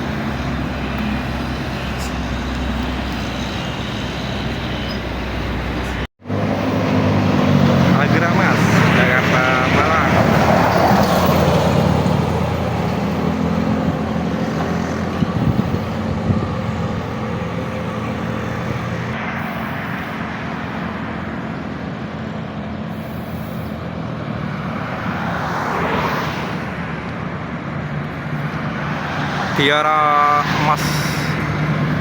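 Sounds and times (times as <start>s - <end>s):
bus diesel engine humming: 0.0s - 25.4s, 26.6s - 32.0s
road traffic noise: 0.0s - 32.0s
vehicle passing: 0.2s - 21.1s.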